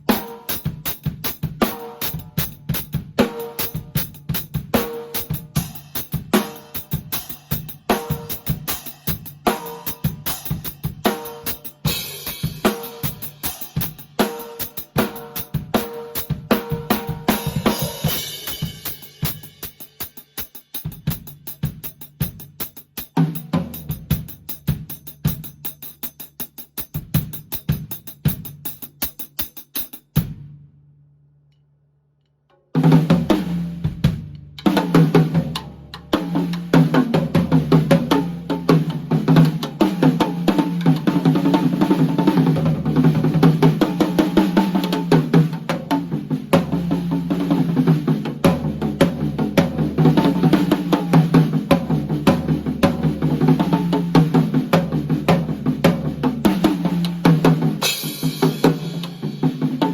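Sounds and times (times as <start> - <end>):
muffled hi-hat: 0.0 - 30.3
drum kit playing: 0.0 - 30.6, 32.7 - 59.9.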